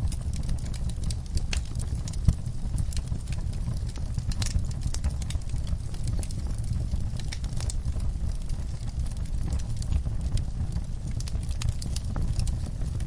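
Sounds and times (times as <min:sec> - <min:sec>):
fire crackling and popping: 0:00.0 - 0:13.0
low rumble: 0:00.0 - 0:13.0.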